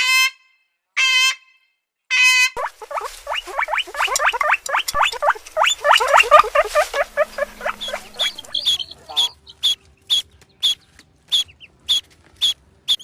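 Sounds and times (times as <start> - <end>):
chattering rising squeaks: 2.6 - 9.4
animal pitched calls: 2.6 - 9.8.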